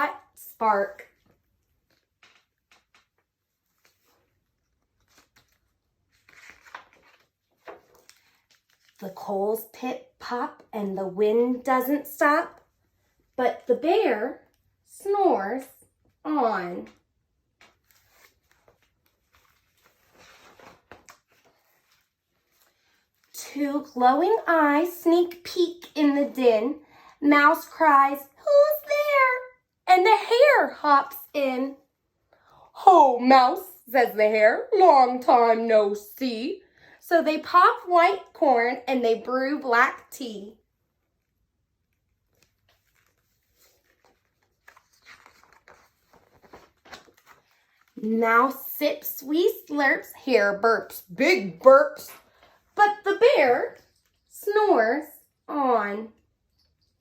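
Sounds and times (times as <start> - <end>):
paper rustle of page turning: 1.1 - 9.3, 16.8 - 23.4, 41.2 - 48.1.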